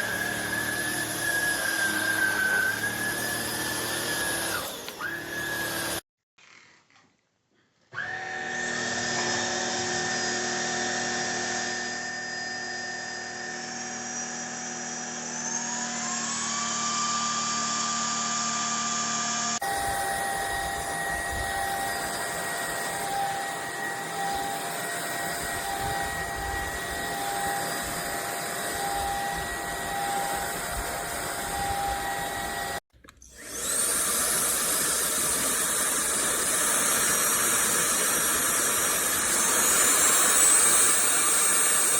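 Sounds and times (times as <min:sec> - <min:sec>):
stick vacuum whining: 0:00.0 - 0:06.0, 0:07.9 - 0:41.9.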